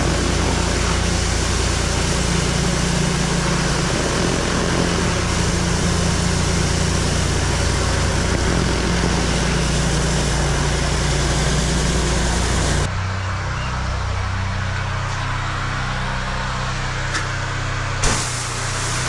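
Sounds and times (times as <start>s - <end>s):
hissing water spray: 0.0s - 12.9s, 18.0s - 19.0s
pressure washer engine running: 0.0s - 13.4s, 14.0s - 19.0s.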